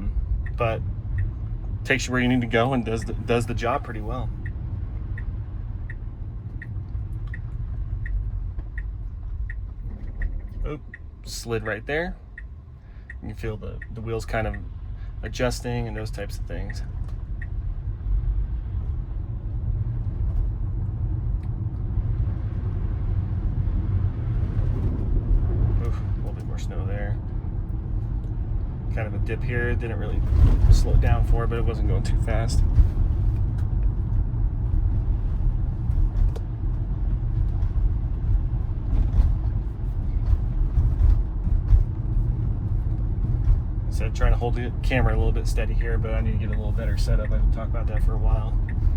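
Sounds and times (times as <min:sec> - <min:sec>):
tyre and road rumble: 0:13.3 - 0:48.9.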